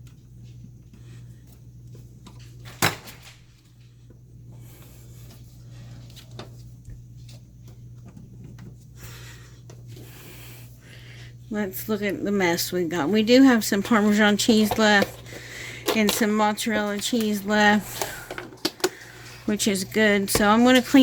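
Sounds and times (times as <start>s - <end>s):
steady low hum: 0.0s - 21.0s
kitchen clicks and rustles: 13.6s - 21.0s.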